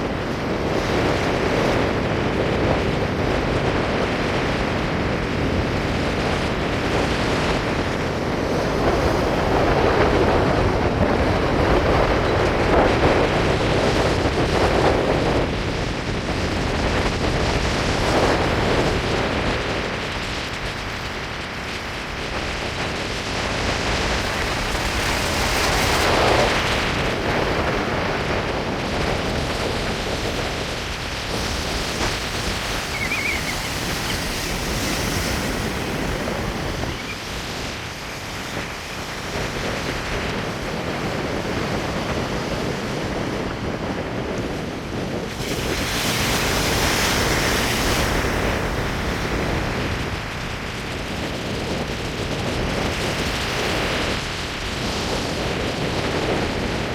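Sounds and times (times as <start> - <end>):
ocean surf breaking: 0.0 - 56.9
wind buffeting microphone: 0.0 - 56.9.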